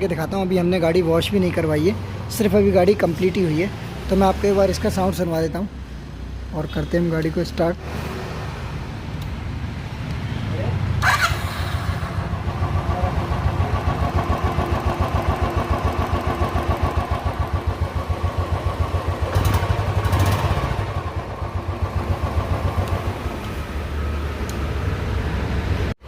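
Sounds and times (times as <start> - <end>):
motorcycle engine revving: 10.9 - 25.9
motorcycle engine idling: 11.0 - 23.7.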